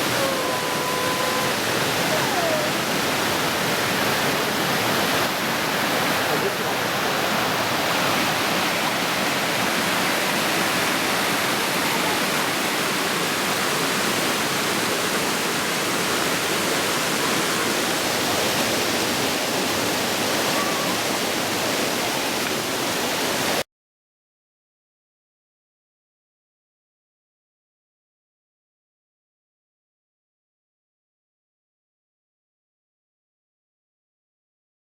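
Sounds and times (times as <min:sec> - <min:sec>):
waterfall roaring: 0:00.0 - 0:23.6.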